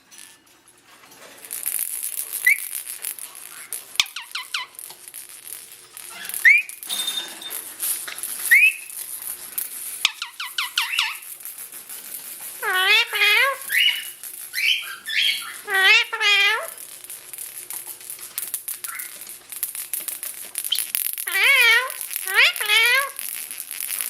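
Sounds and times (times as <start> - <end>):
parakeet chirping: 2.4 - 2.8, 3.5 - 4.8, 6.0 - 7.2, 8.1 - 9.0, 10.0 - 11.4, 12.6 - 16.8, 18.7 - 19.3, 20.6 - 23.2.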